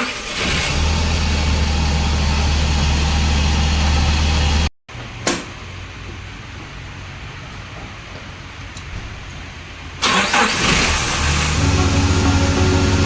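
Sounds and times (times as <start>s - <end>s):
pickup engine running: 0.3s - 4.7s, 10.0s - 13.0s.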